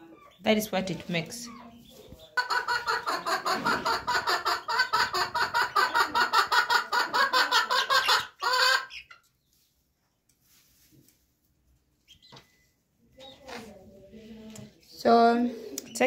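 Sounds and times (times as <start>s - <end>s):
hen cackling: 2.4s - 9.2s.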